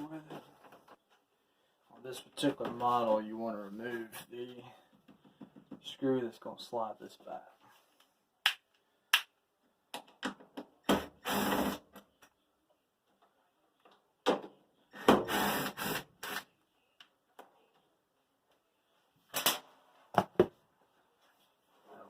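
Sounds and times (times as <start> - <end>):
cordless drill running: 10.9 - 11.8, 15.0 - 16.4.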